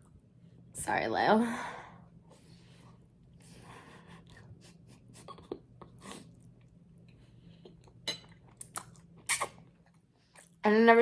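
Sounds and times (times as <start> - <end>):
soft chewing: 2.8 - 10.6
mouth clicks and smacks: 8.6 - 9.6.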